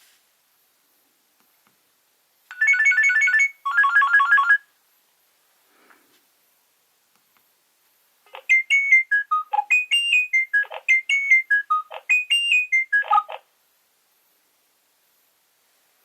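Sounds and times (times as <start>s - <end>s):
mobile phone ringtone: 2.5s - 4.6s, 8.3s - 13.4s.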